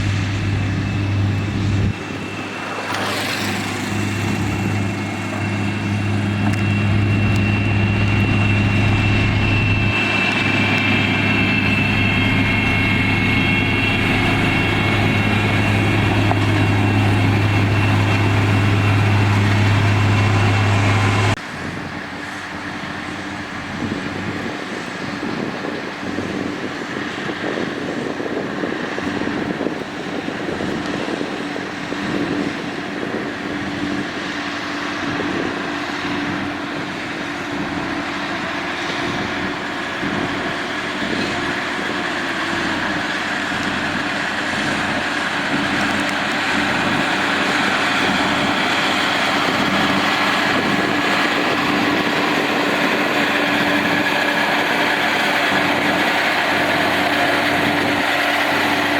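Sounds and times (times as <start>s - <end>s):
heavy diesel engine droning: 0.0s - 58.9s.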